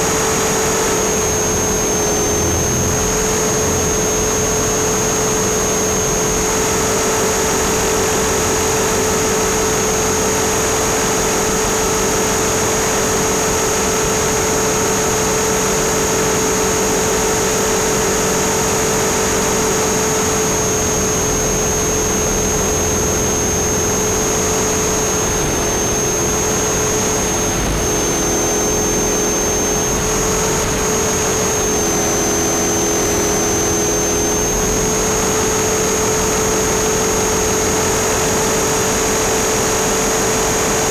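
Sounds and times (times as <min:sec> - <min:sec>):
electric motor whine: 0:00.0 - 0:40.9
helicopter rotor noise: 0:13.1 - 0:39.5.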